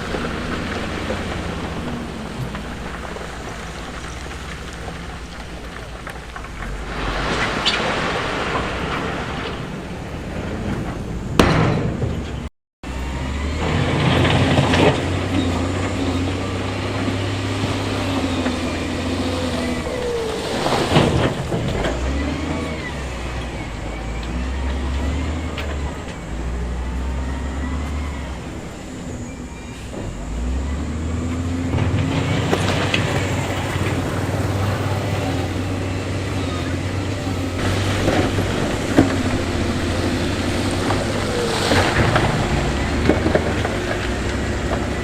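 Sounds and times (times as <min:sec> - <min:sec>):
heavy diesel equipment running: 0:00.0 - 0:45.0
loose stone rushing and clattering: 0:31.6 - 0:45.0.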